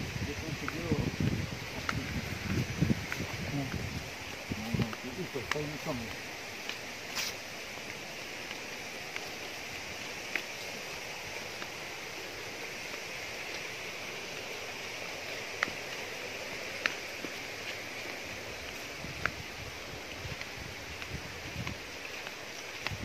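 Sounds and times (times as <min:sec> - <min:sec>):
stream water rushing: 0:00.0 - 0:23.0.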